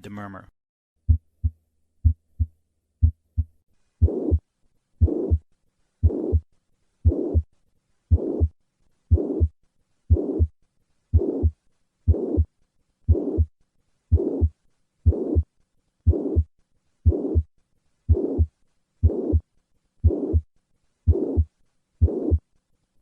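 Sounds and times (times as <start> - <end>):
heartbeat: 1.0 - 4.4, 5.0 - 7.5, 8.1 - 10.5, 11.1 - 12.5, 13.1 - 13.5, 14.1 - 15.5, 16.1 - 17.5, 18.1 - 20.5, 21.1 - 22.4
blowing heart murmur: 3.0 - 4.4, 5.0 - 5.4, 6.0 - 6.4, 7.0 - 7.5, 8.1 - 8.5, 9.1 - 9.5, 10.1 - 10.5, 11.2 - 11.5, 12.1 - 12.5, 13.1 - 13.5, 14.1 - 14.5, 16.1 - 17.5, 18.1 - 19.4, 21.1 - 22.4.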